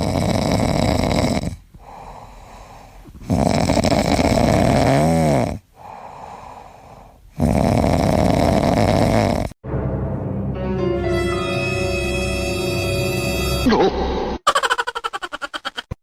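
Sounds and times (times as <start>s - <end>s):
pet snoring: 0.0s - 1.7s, 3.2s - 5.6s, 7.3s - 9.6s.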